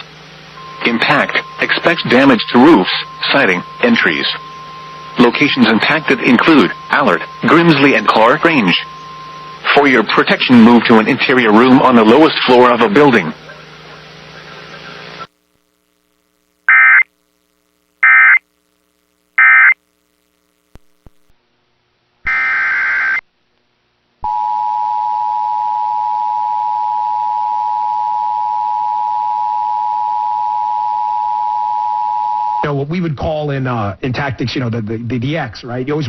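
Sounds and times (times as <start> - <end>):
buzzing data tone bursts: 0.0 - 20.7, 22.2 - 23.2
loud two-tone alert signal: 0.6 - 10.0.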